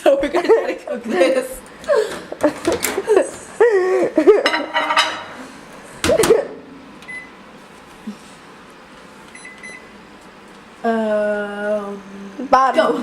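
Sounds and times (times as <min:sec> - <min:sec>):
microwave keypad beep: 0:07.0 - 0:07.4, 0:09.3 - 0:09.9.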